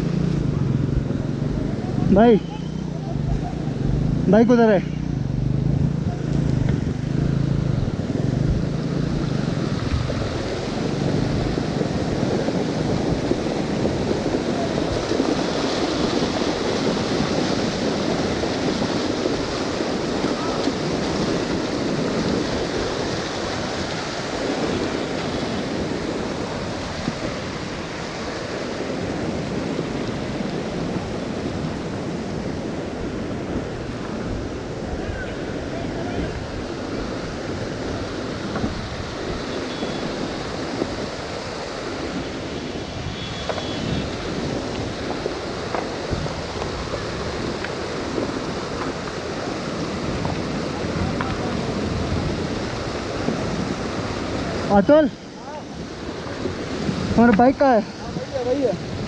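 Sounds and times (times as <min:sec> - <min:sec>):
stream water rushing: 0:00.0 - 0:59.0.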